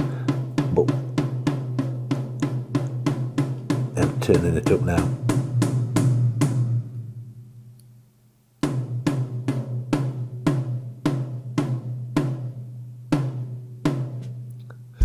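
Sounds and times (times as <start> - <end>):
electronic drum hits: 3.7 - 7.4.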